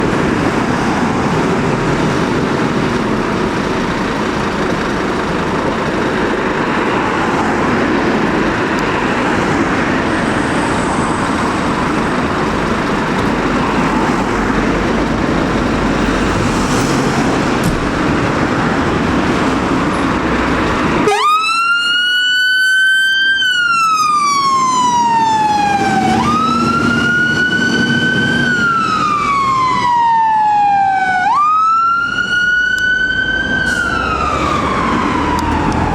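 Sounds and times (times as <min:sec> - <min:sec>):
loud rushing noise: 0:00.0 - 0:21.2, 0:33.2 - 0:35.9
fire engine siren wailing: 0:00.0 - 0:35.9.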